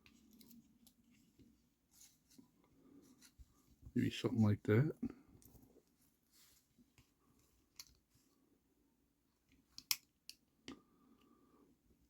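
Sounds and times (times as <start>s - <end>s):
plastic toy parts clicking: 9.8s - 10.4s.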